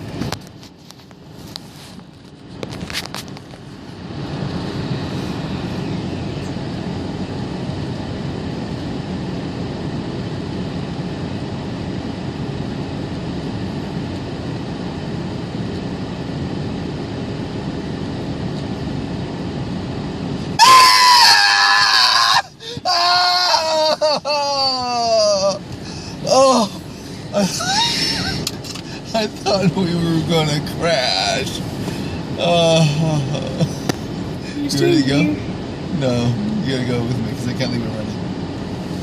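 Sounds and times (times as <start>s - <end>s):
car engine and road noise: 0.0s - 39.0s
person screaming: 20.6s - 28.4s.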